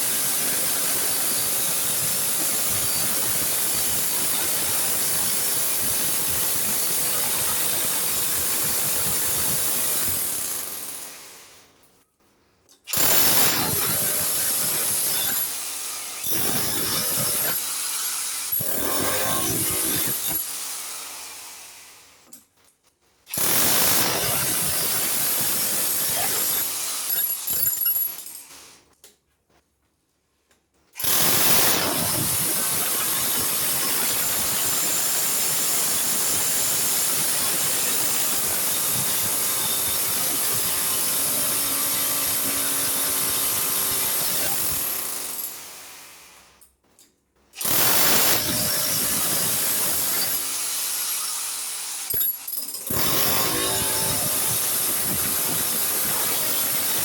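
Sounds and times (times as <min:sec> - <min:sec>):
power drill running: 0:31.0 - 0:46.4, 0:47.6 - 0:57.0.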